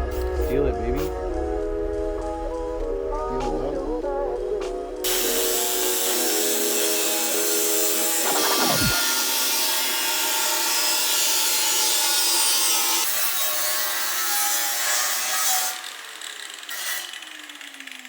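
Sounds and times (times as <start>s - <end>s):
power grinder grinding sheet metal: 5.1s - 18.0s.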